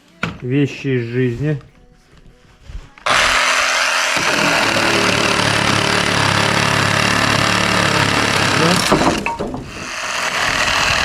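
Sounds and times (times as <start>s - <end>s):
reciprocating saw running: 2.7s - 11.0s
saw blade chattering through wood: 3.1s - 11.0s.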